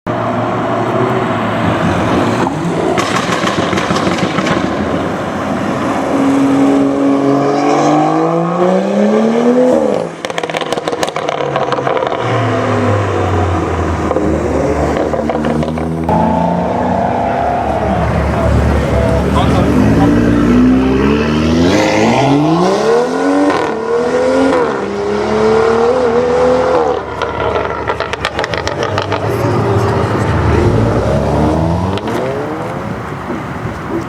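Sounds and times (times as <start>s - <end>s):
car engine accelerating: 0.1s - 34.0s
exhaust pops and crackles: 2.9s - 5.1s, 27.1s - 29.9s.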